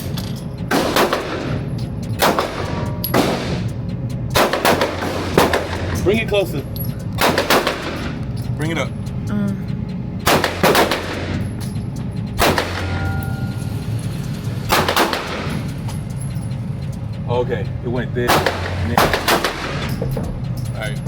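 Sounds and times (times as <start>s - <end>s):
steady low hum: 0.0s - 21.0s
gunshots echoing: 0.7s - 1.6s, 2.2s - 3.7s, 4.4s - 6.0s, 7.2s - 8.2s, 10.2s - 11.5s, 12.4s - 13.2s, 14.7s - 15.7s, 18.3s - 20.0s.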